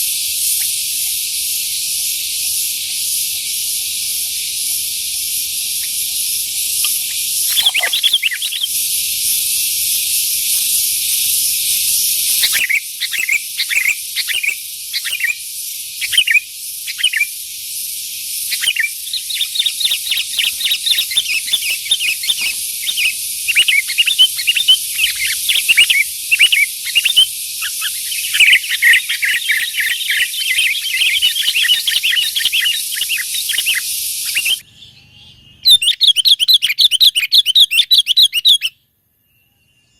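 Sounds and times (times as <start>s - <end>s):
steady high hiss: 0.0s - 34.7s
bulbuls calling: 6.7s - 9.4s, 18.6s - 34.6s.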